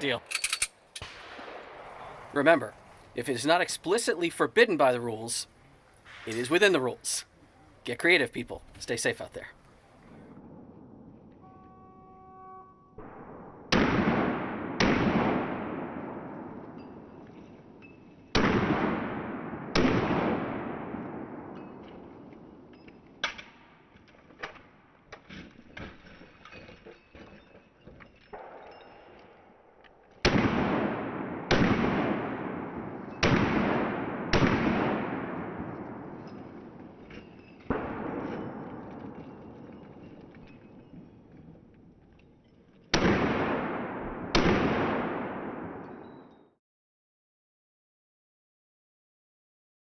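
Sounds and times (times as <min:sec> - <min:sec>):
loud echoing pistol shots: 0:00.0 - 0:03.0, 0:13.0 - 0:17.1, 0:18.4 - 0:22.6, 0:30.2 - 0:37.0, 0:37.7 - 0:39.6, 0:42.9 - 0:46.0.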